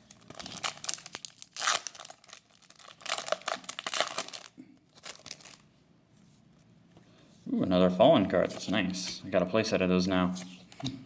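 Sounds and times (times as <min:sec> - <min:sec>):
foil wrapper crinkling: 0:00.0 - 0:05.6.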